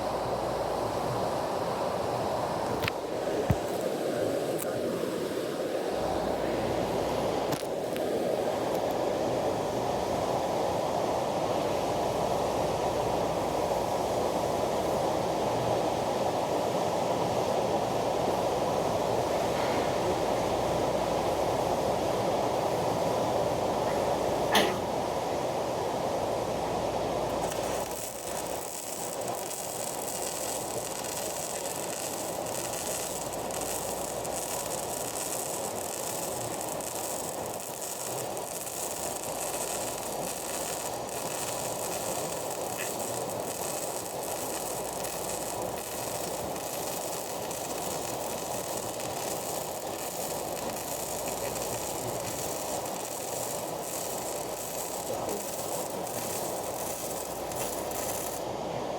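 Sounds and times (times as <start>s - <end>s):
welding arc crackling sizzle: 2.2s - 4.8s, 6.0s - 9.1s, 27.0s - 58.5s.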